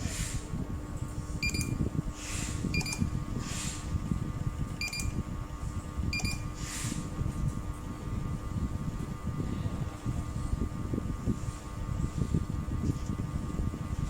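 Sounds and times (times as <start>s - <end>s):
electronic buzzer beeps: 1.4s - 1.8s, 2.7s - 3.1s, 4.8s - 5.2s, 6.1s - 6.6s.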